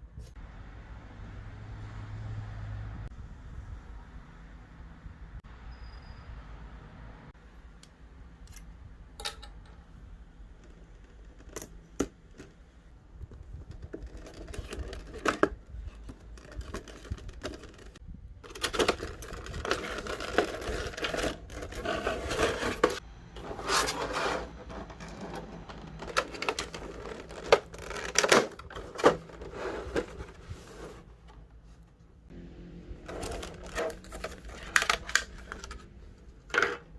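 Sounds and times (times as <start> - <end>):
packaging rustling and tearing: 14.0 - 23.0, 23.6 - 30.4, 33.1 - 35.8
packaging clicks and taps: 33.1 - 35.9.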